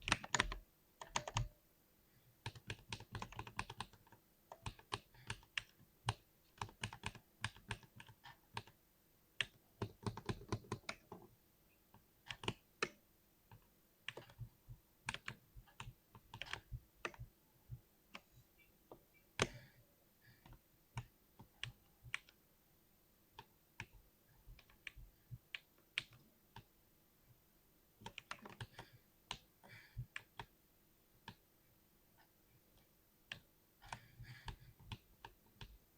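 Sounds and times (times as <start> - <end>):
keyboard typing: 0.0 - 1.6, 2.4 - 8.8, 9.4 - 11.3, 12.3 - 14.5, 15.1 - 17.3, 28.0 - 29.4.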